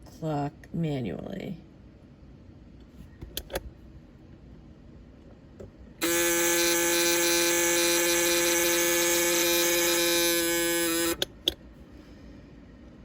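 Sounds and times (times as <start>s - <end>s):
alarm clock buzzing: 6.0s - 11.5s.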